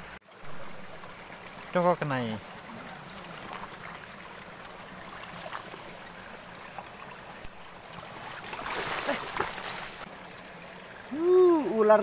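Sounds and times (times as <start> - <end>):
water sloshing and splashing: 0.4 - 12.0.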